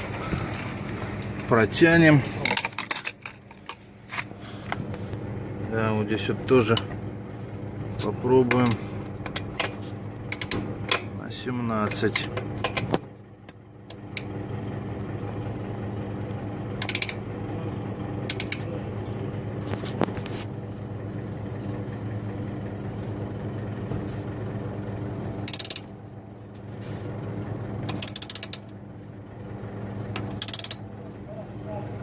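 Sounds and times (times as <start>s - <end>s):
steady low hum: 0.0s - 32.0s
ratchet wrench clicking: 10.3s - 10.6s, 16.8s - 17.2s, 18.3s - 18.6s, 25.5s - 25.9s, 27.9s - 28.7s, 30.4s - 30.8s.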